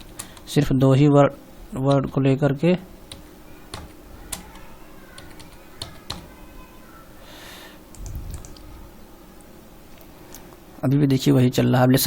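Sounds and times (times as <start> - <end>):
soft rush of noise: 3.3 - 11.4.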